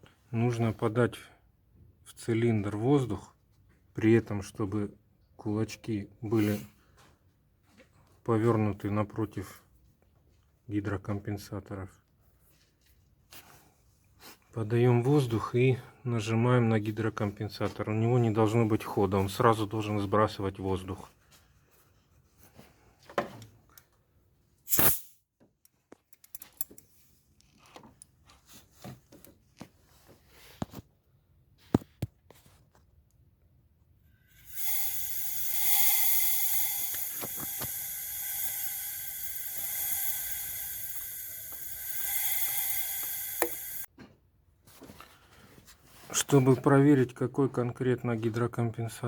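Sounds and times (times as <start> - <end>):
compressed air hissing: 34.2 - 43.9.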